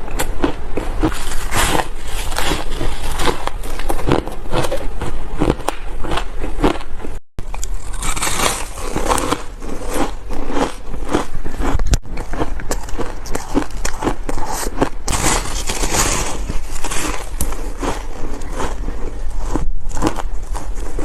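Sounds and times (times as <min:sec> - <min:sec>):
chewing ice crunches: 0:00.1 - 0:21.0.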